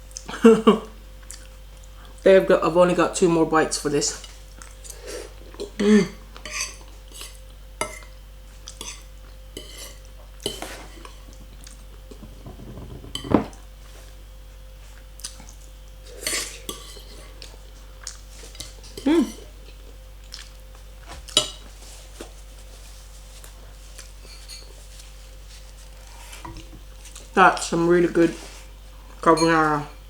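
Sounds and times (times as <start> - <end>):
fork clinking and scraping on plate: 12.2 - 13.6.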